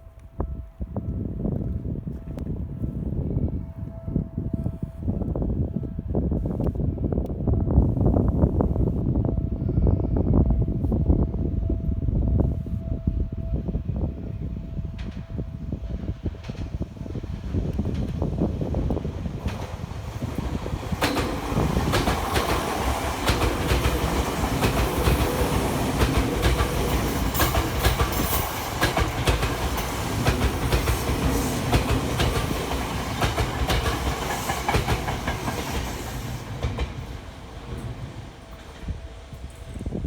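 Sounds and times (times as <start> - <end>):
train rumble: 0.0 - 40.0
train wheels clacking over rail joints: 17.6 - 39.6.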